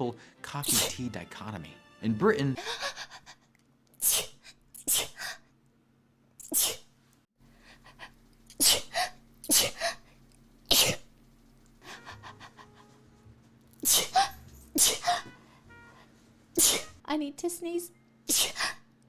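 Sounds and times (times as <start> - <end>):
person sneezing: 0.6 - 1.0, 4.0 - 5.4, 6.4 - 6.9, 13.8 - 15.4, 16.6 - 17.0, 18.3 - 18.8.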